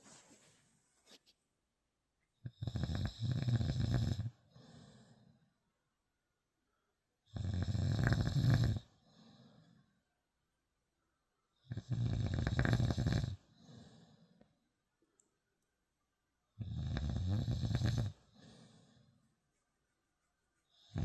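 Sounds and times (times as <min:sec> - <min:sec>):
person snoring: 0:07.4 - 0:09.4, 0:11.7 - 0:13.4, 0:16.6 - 0:18.5
soft breath out: 0:18.2 - 0:19.4.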